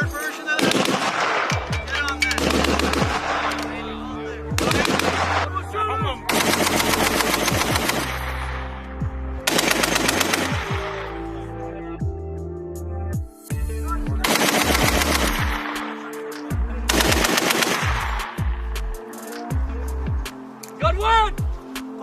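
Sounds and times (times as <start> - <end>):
machine gun firing: 0.6 - 1.7, 2.4 - 3.7, 4.6 - 5.4, 6.3 - 8.3, 9.5 - 10.8, 14.2 - 15.8, 16.9 - 18.2
music with deep bass beat: 1.5 - 22.0.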